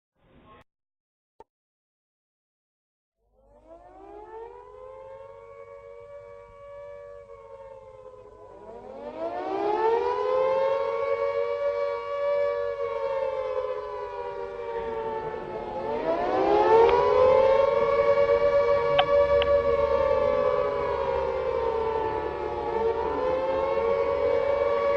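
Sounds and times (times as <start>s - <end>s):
air-raid siren wailing: 3.2s - 24.9s.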